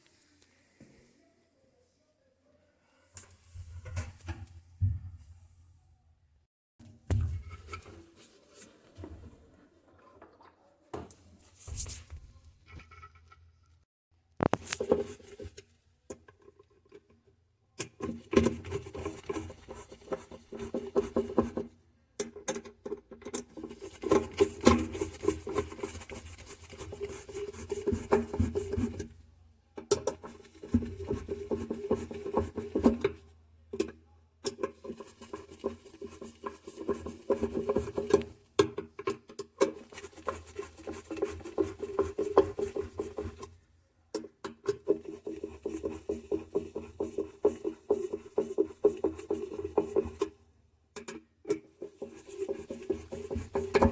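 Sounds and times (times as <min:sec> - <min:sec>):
scraping and rubbing strokes: 0:11.4 - 0:12.3, 0:23.6 - 0:29.1, 0:34.7 - 0:38.3, 0:39.6 - 0:43.6, 0:44.7 - 0:50.4, 0:51.7 - 0:53.9.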